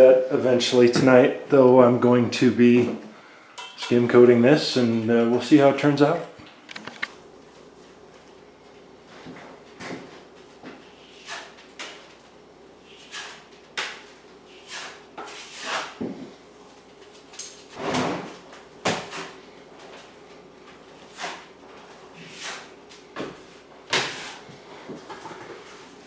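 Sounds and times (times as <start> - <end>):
faint steady hum: 0.0 - 26.0
drywall blade scraping wall: 10.9 - 12.1, 12.8 - 16.2, 17.7 - 19.4, 20.9 - 22.8, 23.4 - 24.5.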